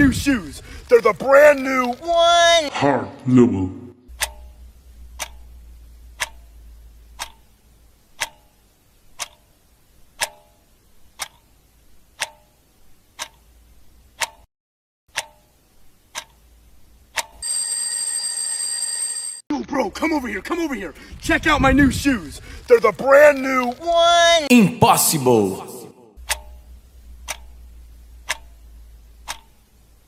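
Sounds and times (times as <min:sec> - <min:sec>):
clock ticking: 0:00.0 - 0:02.7, 0:04.1 - 0:13.5, 0:14.1 - 0:14.5, 0:15.1 - 0:17.4, 0:19.8 - 0:25.6, 0:26.2 - 0:30.0
alarm ringing: 0:17.4 - 0:19.4.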